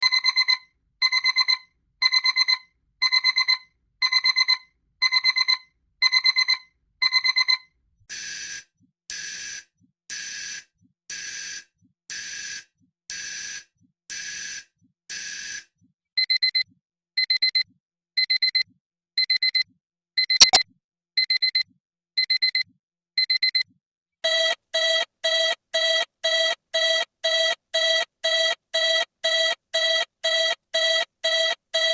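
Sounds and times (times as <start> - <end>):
alarm clock electronic beeping: 4.1 - 15.6
alarm clock ringing bursts: 8.1 - 15.6.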